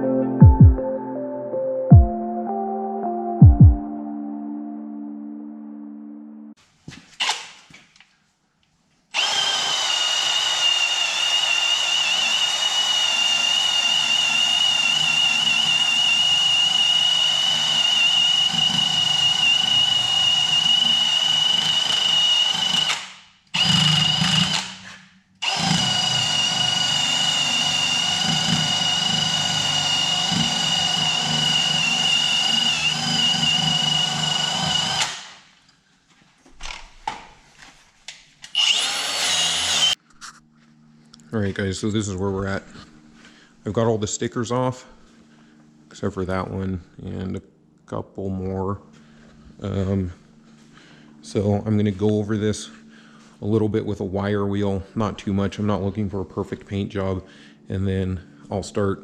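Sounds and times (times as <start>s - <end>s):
power tool motor whining: 9.2s - 35.4s, 38.5s - 40.0s.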